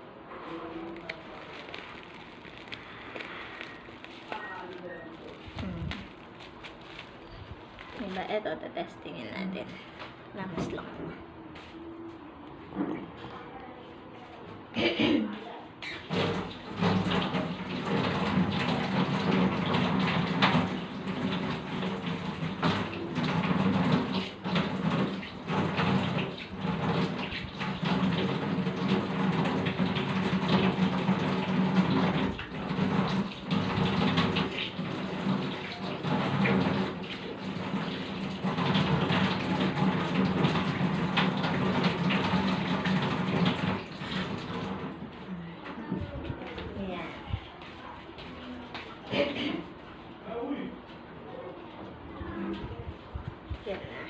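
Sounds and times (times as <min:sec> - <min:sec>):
tap water running and splashing: 0:00.8 - 0:08.2, 0:15.8 - 0:45.2.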